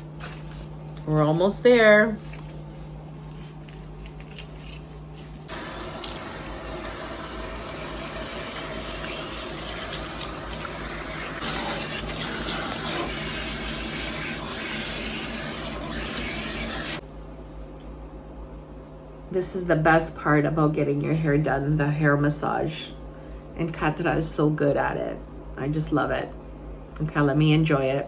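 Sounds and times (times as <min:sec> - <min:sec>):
water running from sink tap: 0:05.5 - 0:17.0.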